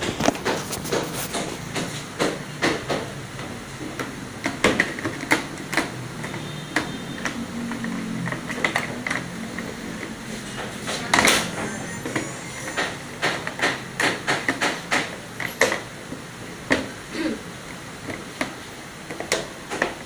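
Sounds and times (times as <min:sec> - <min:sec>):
hand tools clicking and knocking: 0:00.0 - 0:15.9.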